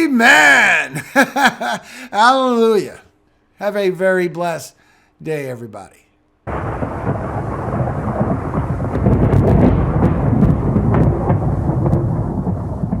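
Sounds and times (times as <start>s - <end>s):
low rolling thunder: 6.5s - 13.0s
rain falling: 6.5s - 13.0s.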